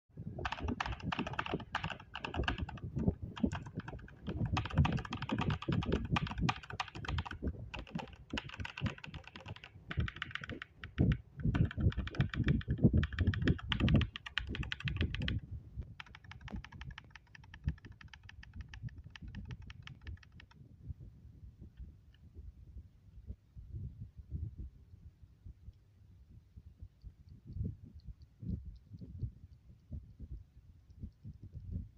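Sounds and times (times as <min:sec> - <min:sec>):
fast typing on mechanical keyboard: 0:00.4 - 0:15.4, 0:16.0 - 0:20.6.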